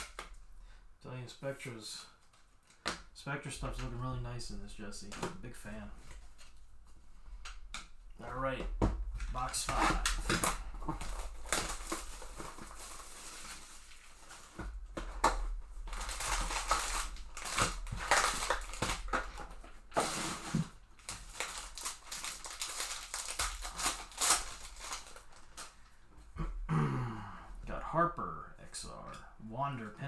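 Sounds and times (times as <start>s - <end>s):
cardboard scraping: 7.3s - 25.7s
plastic wrap crinkling and tearing: 9.2s - 26.0s.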